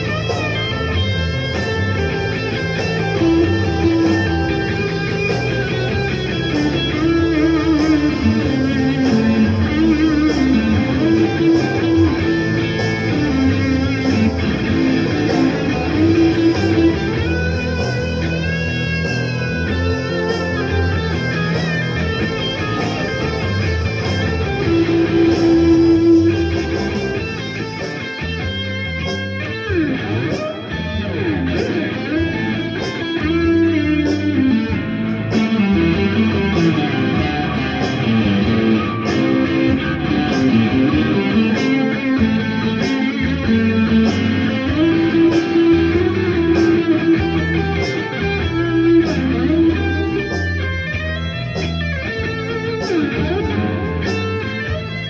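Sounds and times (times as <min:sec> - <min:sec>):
blues guitar playing: 0:00.0 - 0:55.0.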